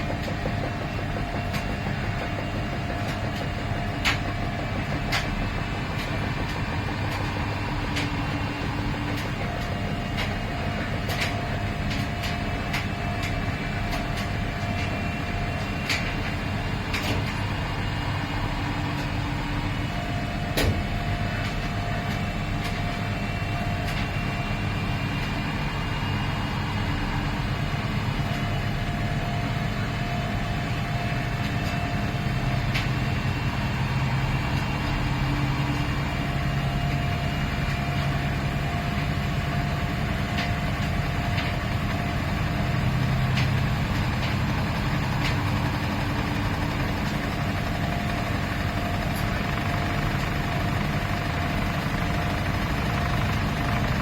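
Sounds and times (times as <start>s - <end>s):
sharp clicks and knocks: 0.0s - 24.3s, 42.8s - 54.0s
washing machine hum: 0.0s - 54.0s.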